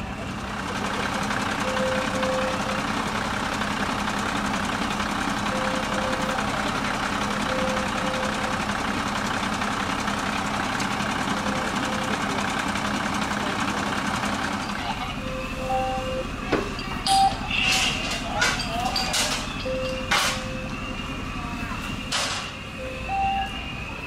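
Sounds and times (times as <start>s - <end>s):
vehicle engine running: 0.0s - 24.0s
short double beeps: 19.5s - 21.0s.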